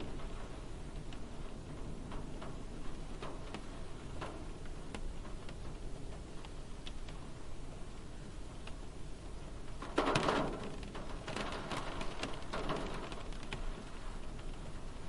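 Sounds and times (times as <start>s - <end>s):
rain drops tapping on car: 0.0s - 15.0s.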